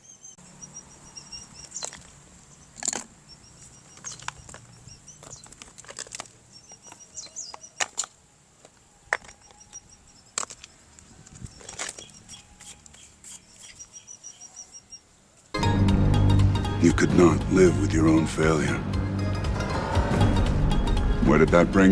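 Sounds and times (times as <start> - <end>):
high pulsed chirping: 0.0 - 5.6, 15.6 - 21.8
sharp clicks and rustles: 1.5 - 13.8
low hum: 15.6 - 21.9.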